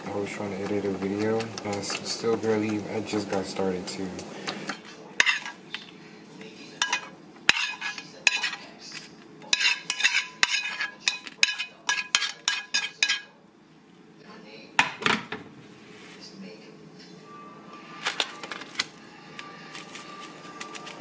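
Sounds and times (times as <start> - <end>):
metal utensil clinking on dishes: 4.7 - 5.9, 6.8 - 13.3.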